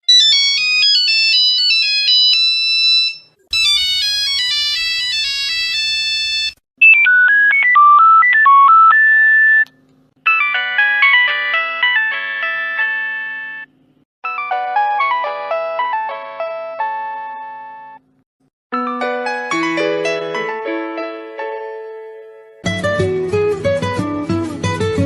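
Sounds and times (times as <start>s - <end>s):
mobile phone ringtones: 0.1s - 9.7s, 10.3s - 13.7s.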